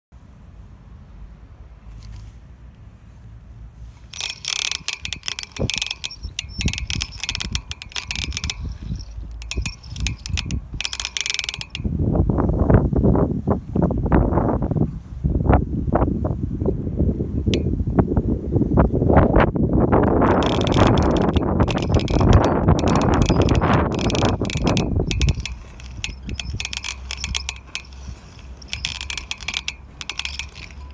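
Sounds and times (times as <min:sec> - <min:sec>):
rapid mechanical clicking: 0:04.0 - 0:12.0, 0:20.0 - 0:30.9.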